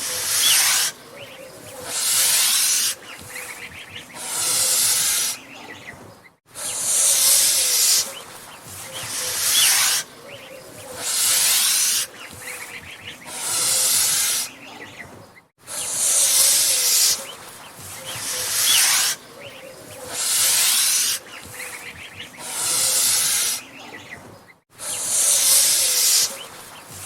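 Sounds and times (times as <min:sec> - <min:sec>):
goose hissing: 0:00.0 - 0:05.8, 0:06.5 - 0:14.8, 0:15.6 - 0:24.0, 0:24.8 - 0:27.0.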